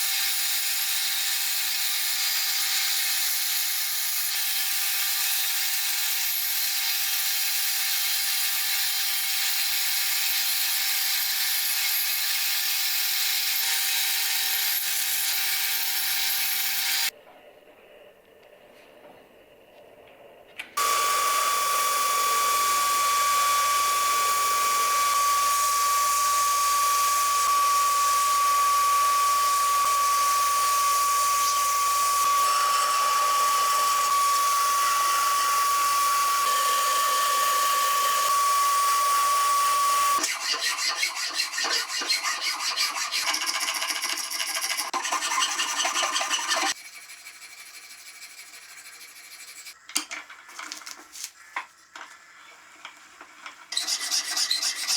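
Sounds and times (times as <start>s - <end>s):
hand filing strokes: 20.8s - 36.5s, 40.0s - 49.8s
power tool grinding: 20.8s - 46.8s.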